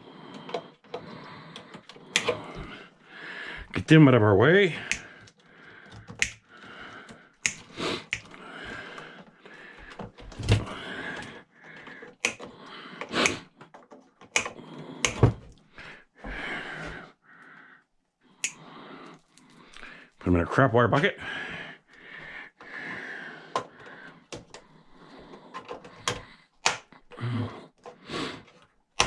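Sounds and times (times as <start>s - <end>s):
wire cutters snipping: 6.1s - 6.4s, 14.2s - 15.2s.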